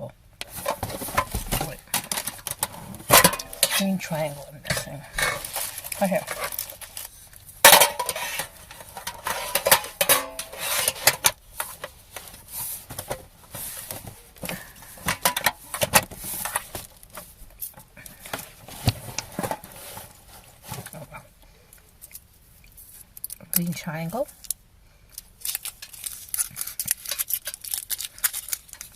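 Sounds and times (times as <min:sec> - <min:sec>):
wrappers crinkling: 0:00.4 - 0:21.1, 0:24.3 - 0:28.9
sweets clinking against metal tin: 0:00.8 - 0:07.0, 0:07.6 - 0:11.3.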